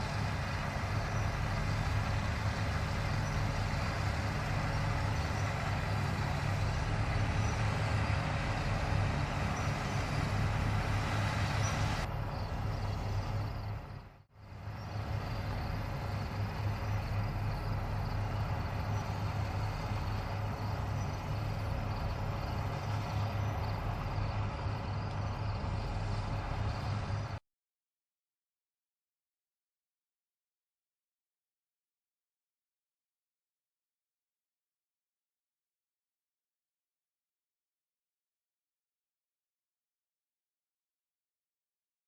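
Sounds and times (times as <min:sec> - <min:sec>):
combine harvester engine drone: 0:00.0 - 0:27.4.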